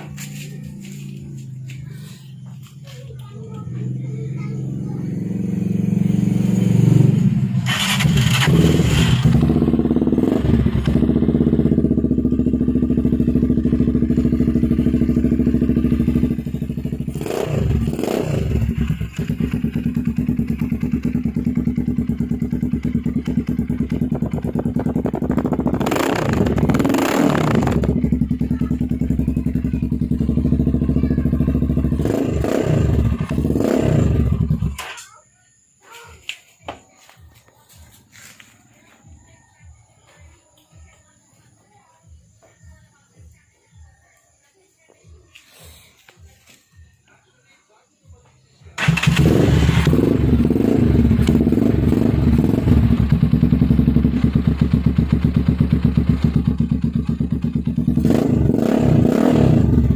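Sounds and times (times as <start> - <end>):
motorcycle engine idling: 0.0 - 35.6, 45.0 - 59.9
motorcycle throttle revs: 3.8 - 35.0, 48.8 - 59.9.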